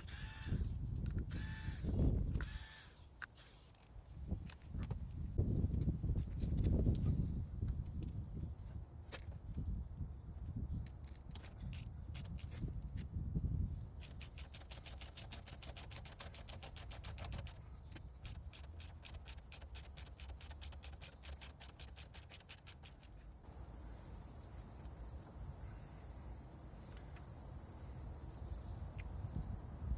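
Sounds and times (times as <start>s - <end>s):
ratchet wrench clicking: 11.4s - 12.6s, 14.0s - 23.2s.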